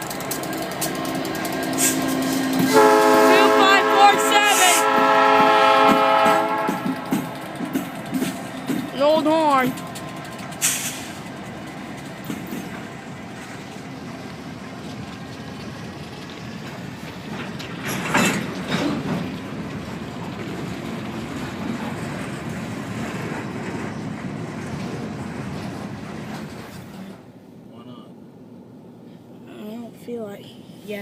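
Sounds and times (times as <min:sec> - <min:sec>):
train clatter: 0:00.0 - 0:27.4
train rolling past: 0:00.0 - 0:31.0.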